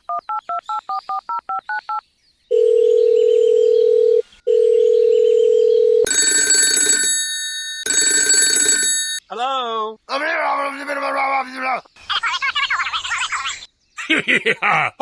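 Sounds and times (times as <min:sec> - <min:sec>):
shrill electronic phone ring: 0:02.5 - 0:09.2.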